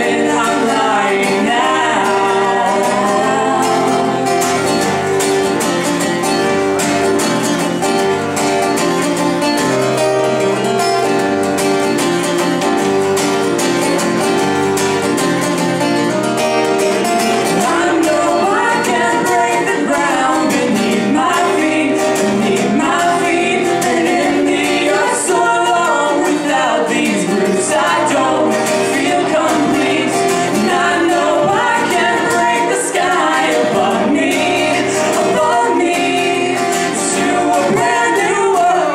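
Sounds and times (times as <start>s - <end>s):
person singing: 0.0s - 4.9s, 17.5s - 38.9s
acoustic band music: 0.0s - 38.9s
strummed acoustic guitar: 0.0s - 38.9s.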